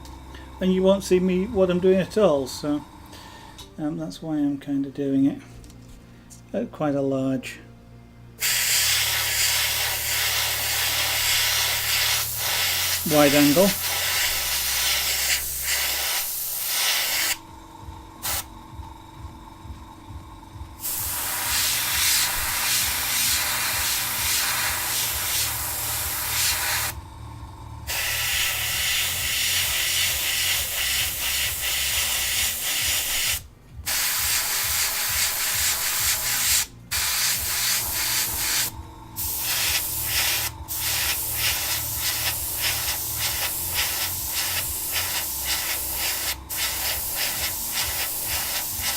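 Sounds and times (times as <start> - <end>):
low pulsing hum: 0.0 - 4.2, 13.7 - 48.9
spray paint hissing: 8.4 - 17.4, 18.2 - 18.5, 20.8 - 27.0, 27.9 - 48.9.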